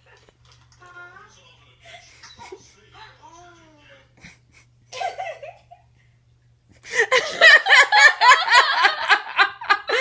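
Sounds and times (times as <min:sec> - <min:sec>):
child laughing: 0:04.9 - 0:05.8.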